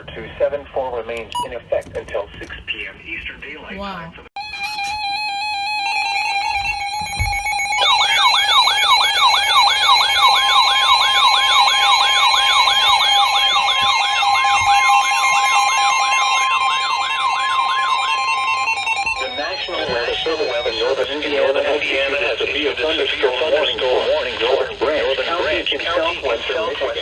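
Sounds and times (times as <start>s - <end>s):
siren-like sweeping tone: 4.4s - 21.1s
steady electronic alarm tone: 4.4s - 21.3s.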